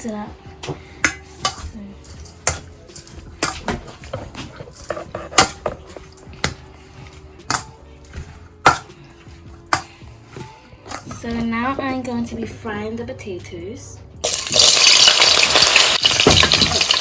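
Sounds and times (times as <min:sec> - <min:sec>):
utensil clinking against bowl: 0:01.0 - 0:10.0, 0:10.8 - 0:11.4.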